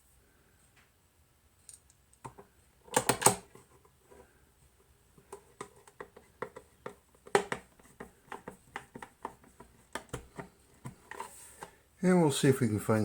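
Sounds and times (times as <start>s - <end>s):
clicks and knocks of parts handled: 1.6s - 4.2s, 5.2s - 11.7s.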